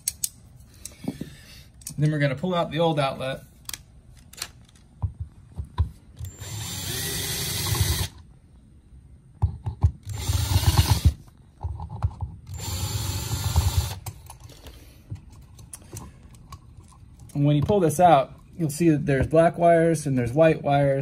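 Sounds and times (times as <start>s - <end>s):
cordless drill running: 6.3s - 8.2s, 10.1s - 11.2s, 12.5s - 14.0s.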